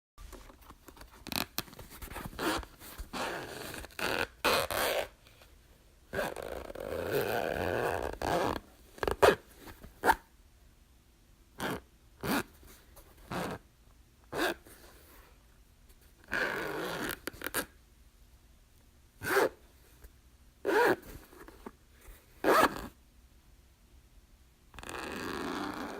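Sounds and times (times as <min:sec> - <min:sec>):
zipper zipping: 0:01.2 - 0:01.6, 0:02.2 - 0:05.2, 0:06.1 - 0:09.4, 0:10.0 - 0:10.2, 0:11.6 - 0:12.5, 0:13.3 - 0:13.6, 0:14.3 - 0:14.6, 0:16.3 - 0:17.7, 0:19.2 - 0:19.6, 0:20.7 - 0:21.2, 0:22.4 - 0:22.9, 0:24.8 - 0:25.9.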